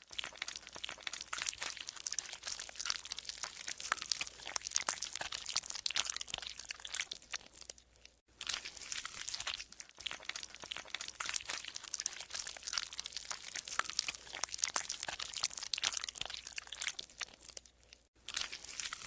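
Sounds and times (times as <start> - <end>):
slime crackling and squelching: 0.0 - 19.0.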